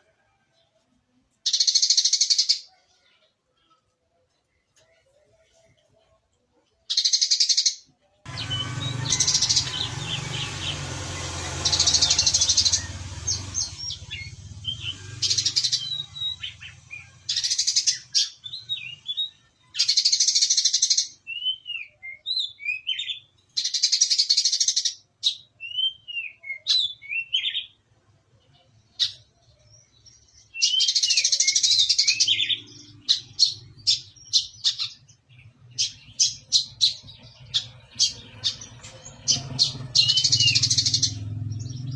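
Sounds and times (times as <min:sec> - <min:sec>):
bird chirping rapidly: 0:06.9 - 0:27.8, 0:30.2 - 0:41.9
slurred whistled bird notes: 0:08.3 - 0:23.2.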